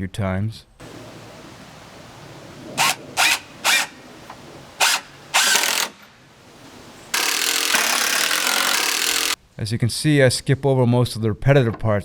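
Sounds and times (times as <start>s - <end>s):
impact driver driving screws: 0.8s - 9.4s.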